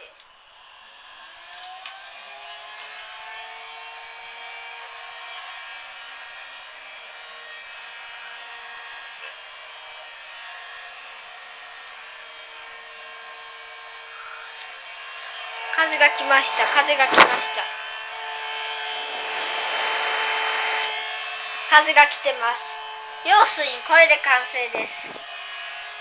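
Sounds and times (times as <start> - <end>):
electric motor whining: 0.4 - 26.0
air hissing from blower: 14.0 - 25.2.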